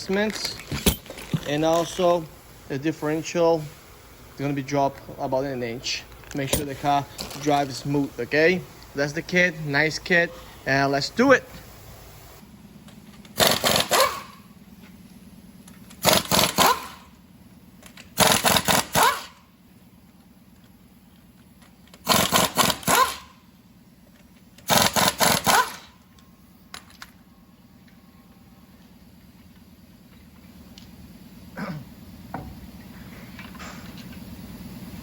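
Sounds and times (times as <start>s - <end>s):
steady low hum: 0.0s - 35.0s
impact wrench hammering: 13.3s - 14.4s, 16.0s - 17.1s, 17.9s - 19.3s, 22.0s - 23.3s, 24.6s - 25.9s.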